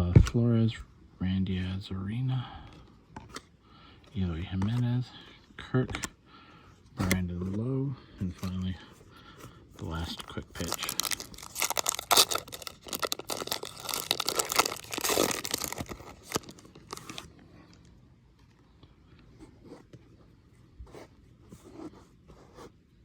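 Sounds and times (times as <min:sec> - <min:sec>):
cards being handled: 0:03.1 - 0:06.2, 0:06.9 - 0:07.6, 0:09.4 - 0:17.8
card pack wrapper tearing: 0:10.0 - 0:17.3.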